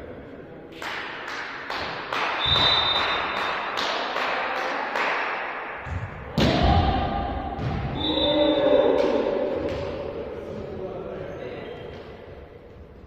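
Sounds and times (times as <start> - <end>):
volleyball hits echoing: 1.3 - 10.8.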